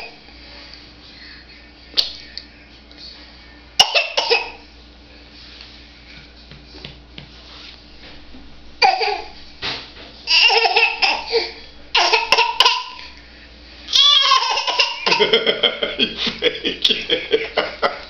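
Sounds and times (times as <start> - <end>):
cough: 3.8 - 4.6, 12.0 - 13.0.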